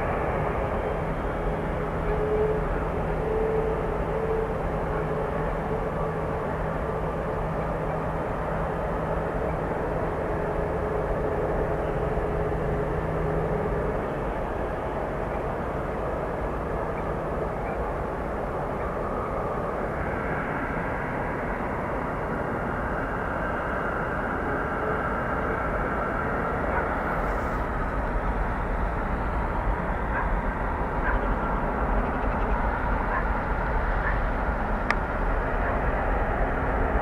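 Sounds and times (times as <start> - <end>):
high engine whine: 0.0 - 37.0
jet engines rushing: 26.2 - 30.8.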